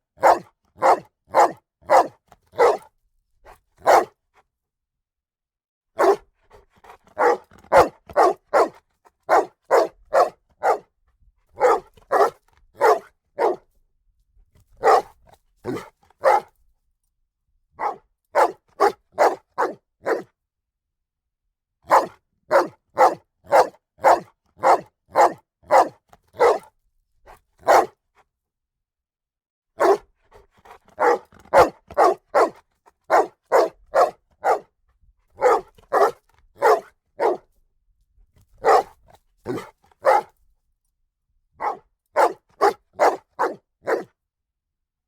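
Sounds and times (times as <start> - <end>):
dog barking: 0.2 - 2.9, 3.8 - 4.2, 6.0 - 10.9, 11.6 - 13.7, 14.8 - 16.5, 17.8 - 20.3, 21.8 - 26.7, 27.6 - 28.0, 29.8 - 34.7, 35.4 - 37.5, 38.6 - 40.4, 41.6 - 44.2.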